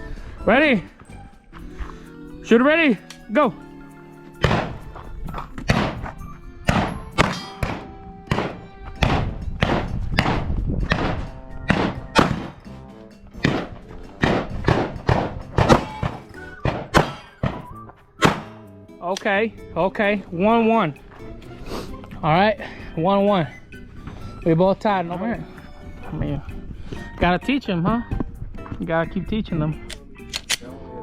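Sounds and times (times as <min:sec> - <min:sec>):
background music: 0:00.0 - 0:31.0
pistol shots: 0:04.4 - 0:04.9, 0:05.7 - 0:12.7, 0:13.4 - 0:18.6.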